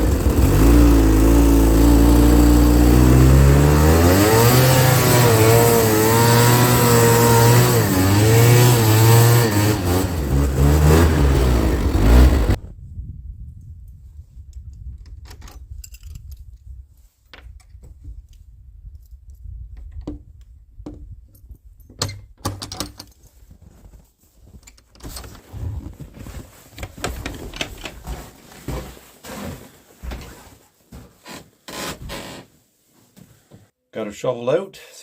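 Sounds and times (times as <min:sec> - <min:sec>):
low steady rumble: 0:00.0 - 0:03.8, 0:08.2 - 0:12.6.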